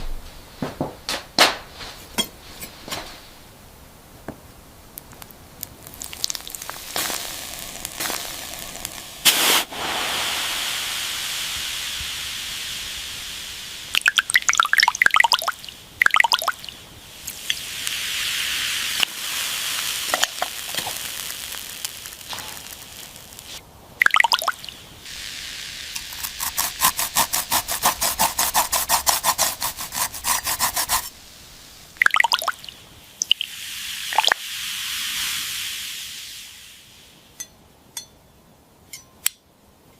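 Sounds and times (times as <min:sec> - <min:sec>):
steady hiss: 0:01.7 - 0:38.8
liquid spray burst: 0:06.0 - 0:16.1, 0:17.0 - 0:32.5, 0:33.2 - 0:37.2
dripping bubbling plinks: 0:13.9 - 0:16.8, 0:24.0 - 0:24.8, 0:32.0 - 0:33.5
scrubbing scraping strokes: 0:26.2 - 0:31.2.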